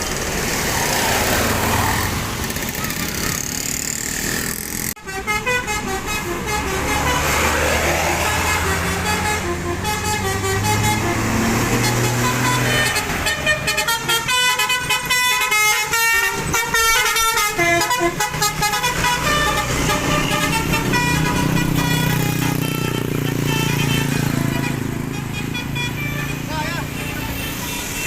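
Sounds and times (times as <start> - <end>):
multi-tone bus horn tune: 5.0 - 28.0.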